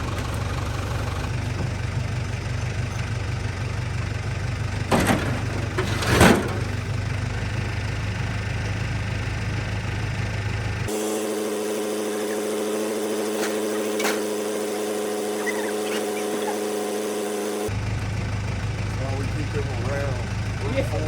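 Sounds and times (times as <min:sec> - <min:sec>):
engine idling: 0:00.0 - 0:21.0
loud clunks: 0:04.8 - 0:06.9.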